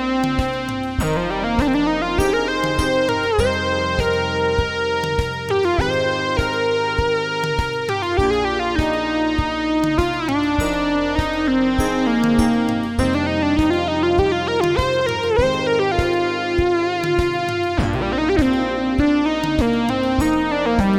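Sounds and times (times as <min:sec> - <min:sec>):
dark synthesizer notes: 0:00.0 - 0:20.9
steady beat of short hits: 0:00.0 - 0:20.9.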